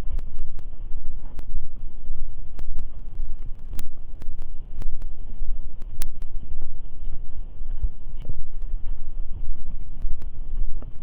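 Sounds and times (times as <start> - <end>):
wind buffeting microphone: 0.0 - 11.0
faint clicks: 2.5 - 5.1, 10.0 - 11.0.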